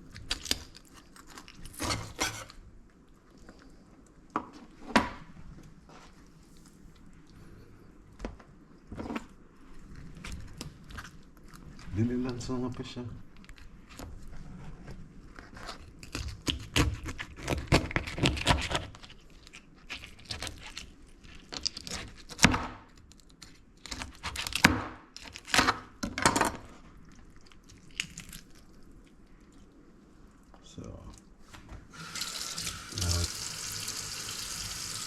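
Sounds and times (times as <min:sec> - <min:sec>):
knife scraping fish: 0:01.7 - 0:02.6.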